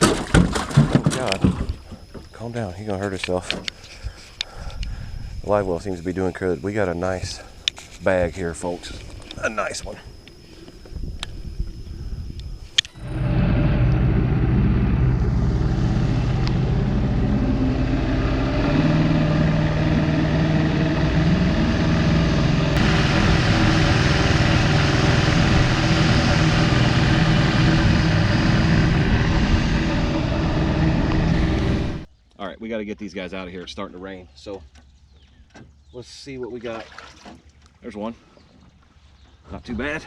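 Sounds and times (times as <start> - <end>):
outboard motor running: 12.9 - 32.1
water and wind rushing: 13.0 - 32.1.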